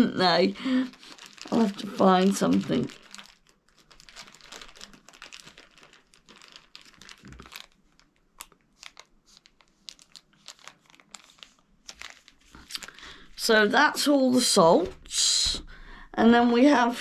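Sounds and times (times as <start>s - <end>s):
wrappers crinkling: 0.0s - 13.5s.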